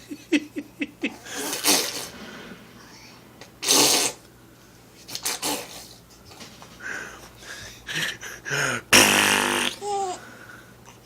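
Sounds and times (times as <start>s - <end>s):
child blowing raspberries: 1.3s - 2.3s, 3.6s - 4.3s.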